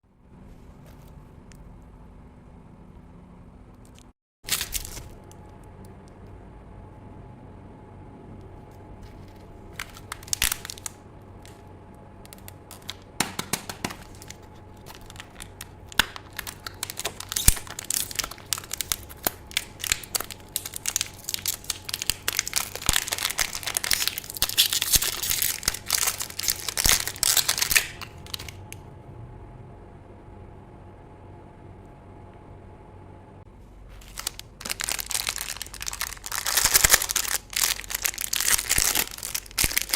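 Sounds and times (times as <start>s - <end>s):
plastic packaging crinkling: 4.4s - 5.5s, 9.0s - 11.6s, 12.3s - 28.8s, 33.9s - 39.9s.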